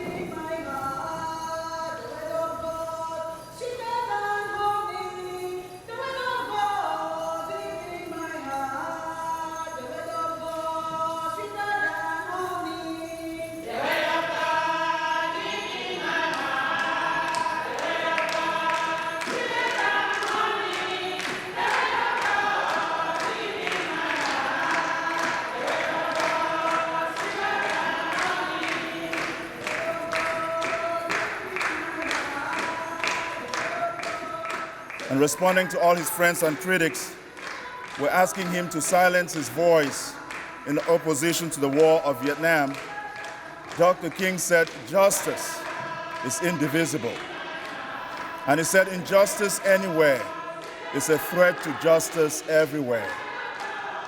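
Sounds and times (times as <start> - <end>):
choir singing in harmony: 0.0 - 54.0.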